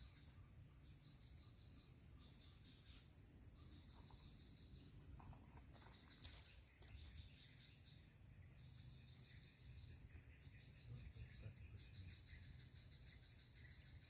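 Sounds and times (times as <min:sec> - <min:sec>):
insects chorus: 0:00.0 - 0:14.0.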